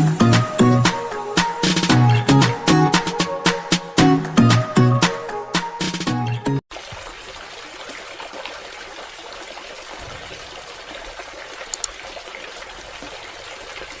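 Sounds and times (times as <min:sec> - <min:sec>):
water trickling and splashing: 0:06.7 - 0:14.0.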